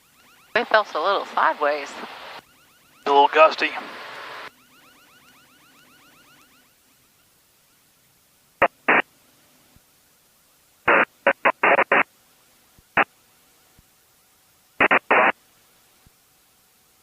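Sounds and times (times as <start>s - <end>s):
radio static bursts: 0.6s - 2.4s, 3.0s - 4.5s, 8.6s - 9.1s, 10.8s - 12.1s, 14.8s - 15.4s.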